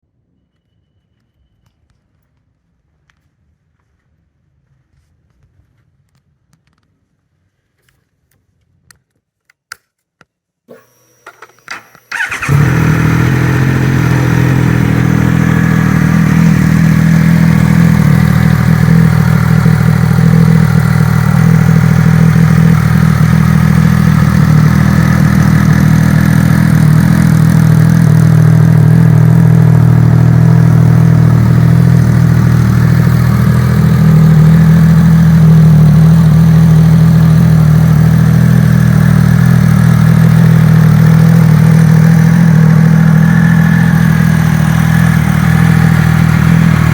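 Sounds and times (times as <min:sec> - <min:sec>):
motorcycle engine starting and idling: 0:10.7 - 0:46.9.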